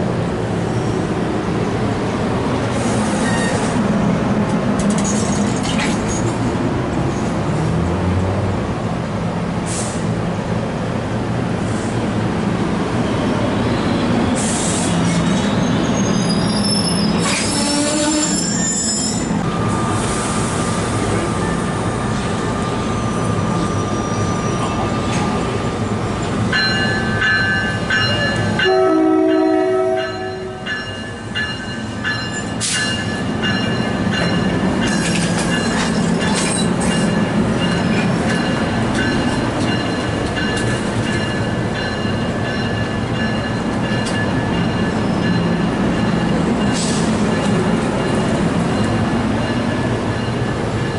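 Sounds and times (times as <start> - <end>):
train rumbling: 0.0 - 50.9
steel wheel squeal: 3.0 - 3.8, 14.6 - 19.4, 21.4 - 25.3
train horn blast: 17.5 - 18.4, 28.6 - 30.7.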